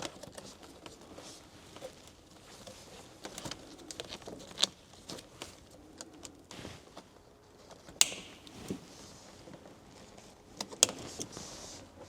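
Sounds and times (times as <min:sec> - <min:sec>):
cable tie clicking: 0:08.0 - 0:08.8, 0:10.6 - 0:11.4.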